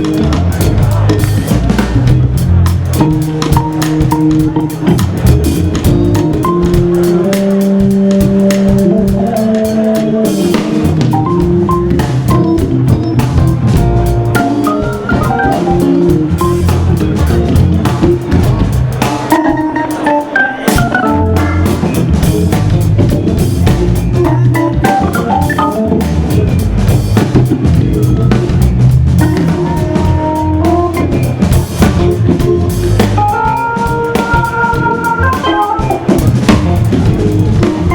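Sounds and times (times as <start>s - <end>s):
drum kit: 0.0s - 37.9s
hammond organ chords: 0.0s - 37.9s.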